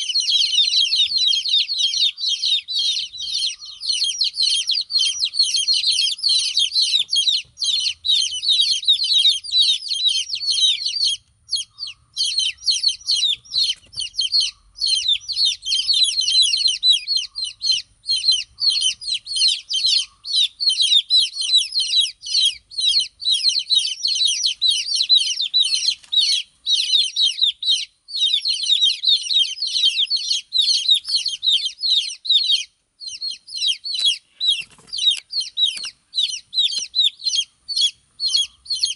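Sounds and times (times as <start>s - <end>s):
baby chicks peeping: 0.0s - 38.9s.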